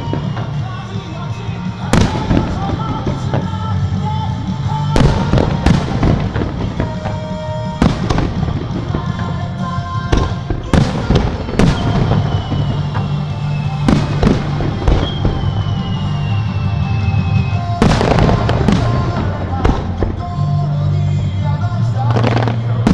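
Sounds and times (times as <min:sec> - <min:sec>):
firework shells bursting: 0:10.2 - 0:20.2.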